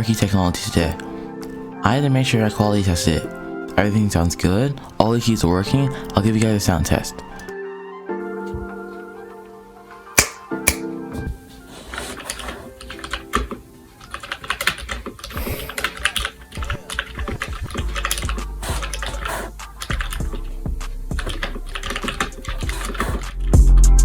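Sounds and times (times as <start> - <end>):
background music: 0.0 - 24.0
mechanical keyboard typing: 12.1 - 20.5, 21.1 - 23.4.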